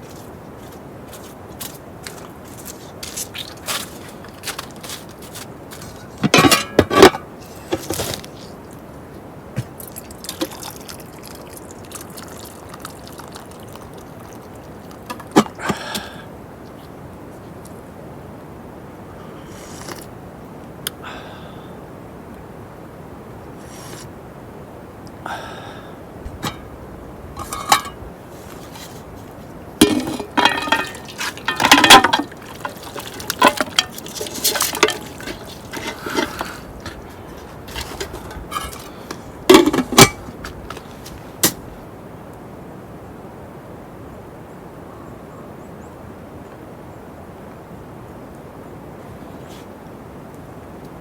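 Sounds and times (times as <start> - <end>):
faint steady hiss: 0.0 - 51.0
hard objects clinking and knocking: 29.8 - 38.9, 39.5 - 40.3.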